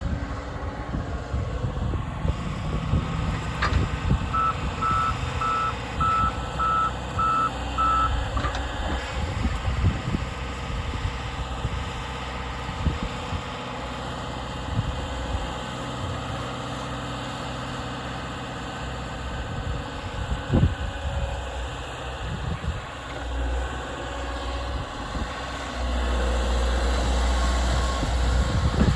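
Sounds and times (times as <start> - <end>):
excavator diesel engine running: 0.0 - 28.9
travel alarm beeps: 4.3 - 8.2.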